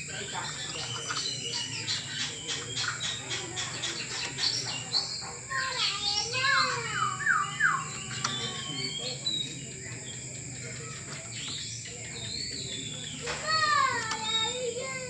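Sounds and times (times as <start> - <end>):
songbird whistling: 0.2 - 15.0.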